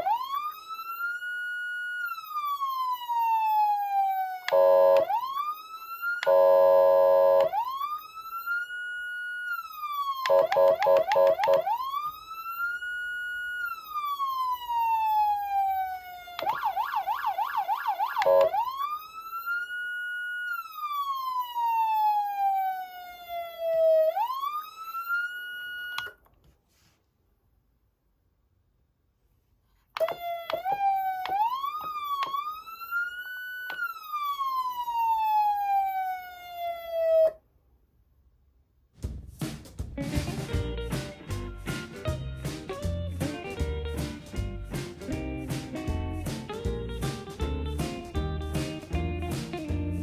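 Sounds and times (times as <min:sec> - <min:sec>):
fast warbling siren yelp: 0:00.0 - 0:26.0, 0:30.0 - 0:37.4
police siren wail: 0:00.0 - 0:26.2, 0:30.0 - 0:37.4
buzzy horn tone: 0:04.5 - 0:05.1, 0:06.3 - 0:07.6, 0:10.3 - 0:11.6, 0:18.2 - 0:18.5.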